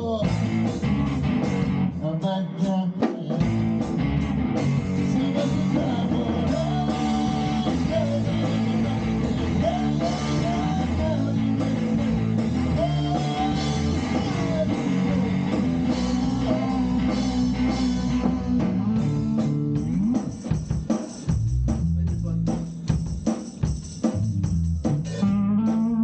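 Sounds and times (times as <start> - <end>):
rock band playing: 0.0 - 26.0
electric guitar bending notes: 3.8 - 20.4, 25.1 - 26.0.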